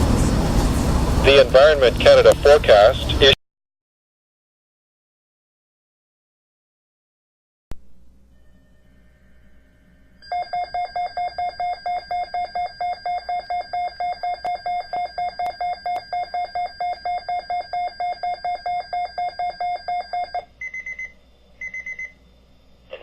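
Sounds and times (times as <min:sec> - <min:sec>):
short high-pitched beeps: 0:10.2 - 0:22.2
weather radio alarm beeping: 0:10.2 - 0:22.2.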